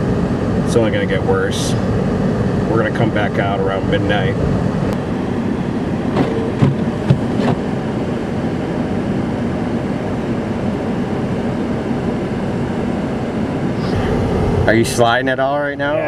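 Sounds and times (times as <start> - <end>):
vehicle driving on wet snowy road: 5.1 - 7.7.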